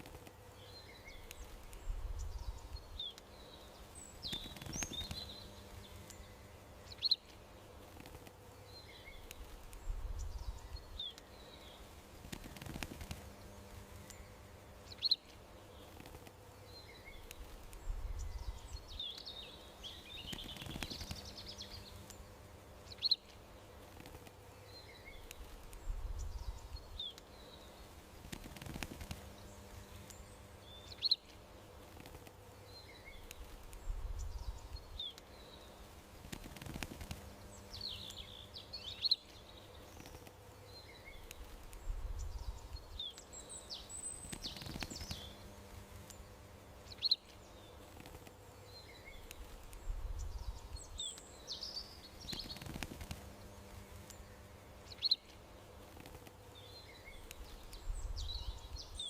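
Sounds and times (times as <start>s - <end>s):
faint steady hum: 0.0s - 59.0s
songbirds chirping and twittering: 0.0s - 59.0s.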